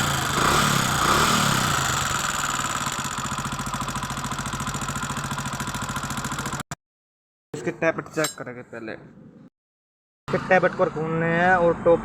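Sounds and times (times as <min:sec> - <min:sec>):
motorcycle engine idling with ticking: 0:00.0 - 0:06.6.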